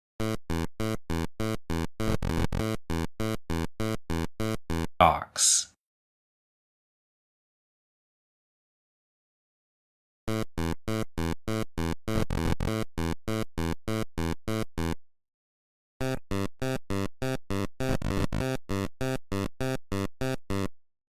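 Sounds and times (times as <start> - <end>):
electronic music with short notes: 10.3 - 15.0.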